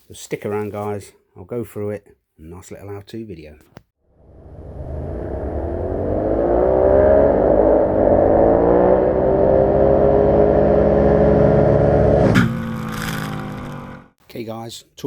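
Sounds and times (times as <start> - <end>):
motorcycle engine revving: 4.1 - 14.2.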